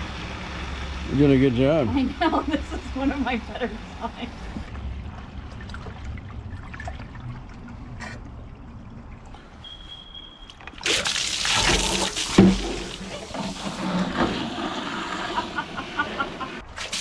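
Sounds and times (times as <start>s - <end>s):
water pouring from hose: 10.6s - 16.0s, 16.6s - 17.0s.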